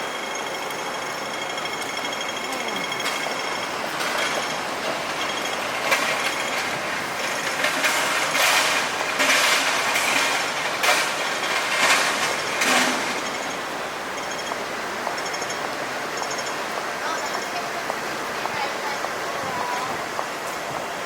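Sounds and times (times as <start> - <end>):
vehicle rattling and clattering: 0.0 - 21.0
loud clanks: 1.3 - 15.7.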